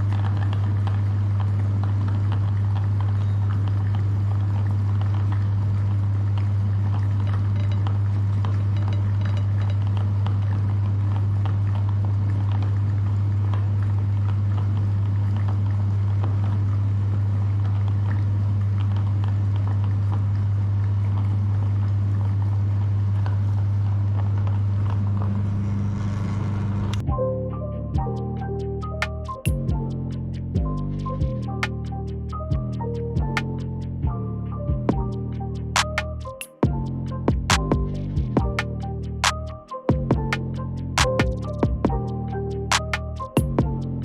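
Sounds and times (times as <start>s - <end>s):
music: 0.0s - 16.6s, 27.0s - 44.0s.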